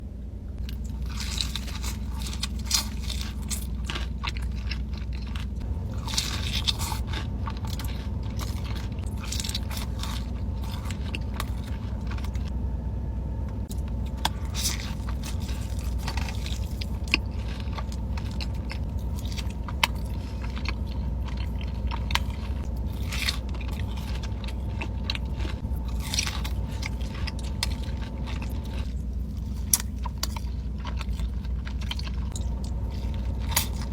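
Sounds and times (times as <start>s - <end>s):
steady low hum: 0.0s - 33.9s
crunchy chewing: 0.6s - 12.6s, 13.6s - 33.9s.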